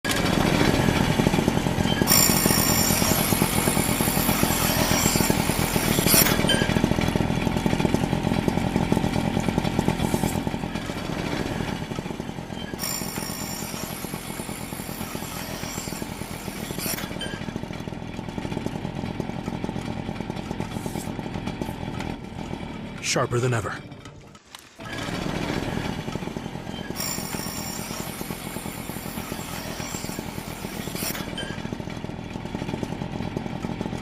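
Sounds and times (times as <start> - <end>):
high ringing squeals: 12.5 - 17.5, 26.7 - 31.7
knife blade grinding: 26.7 - 31.8.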